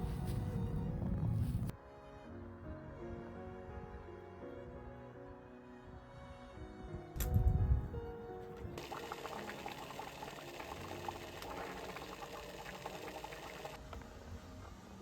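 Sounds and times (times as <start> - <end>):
background music: 0.0 - 15.0
water pouring: 8.8 - 13.8.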